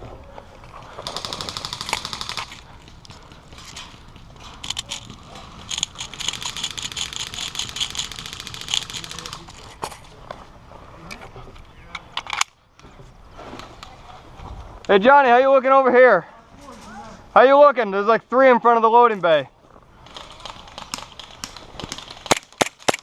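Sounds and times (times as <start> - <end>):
airsoft guns firing bursts: 1.0 - 2.8, 5.6 - 9.5.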